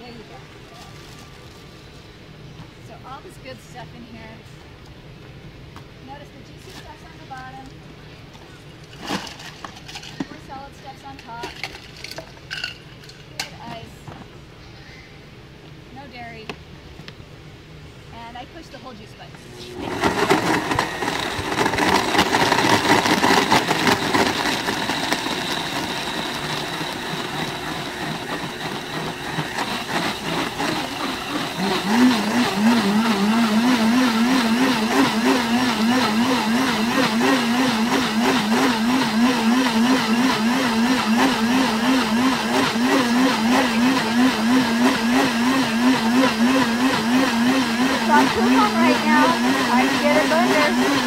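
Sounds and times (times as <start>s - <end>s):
blender motor running: 19.4s - 51.0s.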